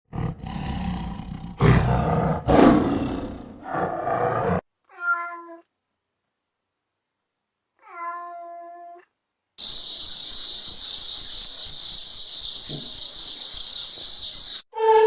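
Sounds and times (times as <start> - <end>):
big cat roaring: 0.1 - 4.6
cat meow: 4.9 - 5.7, 7.8 - 9.1.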